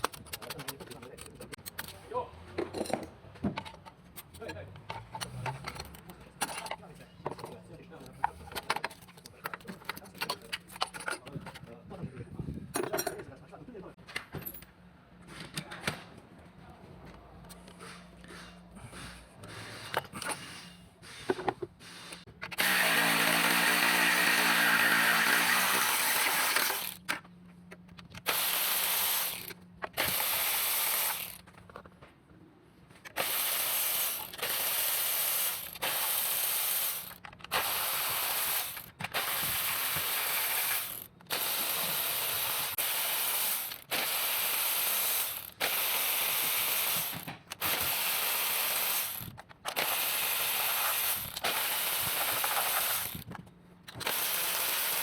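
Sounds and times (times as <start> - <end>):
ratchet wrench clicking: 22.5 - 27.0, 28.1 - 31.4, 33.1 - 55.0
power tool motor whine: 22.6 - 27.0, 28.3 - 31.4.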